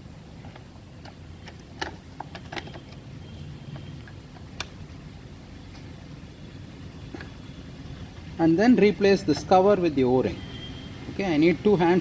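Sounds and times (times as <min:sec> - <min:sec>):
light plastic clicks and taps: 0:03.7 - 0:04.8.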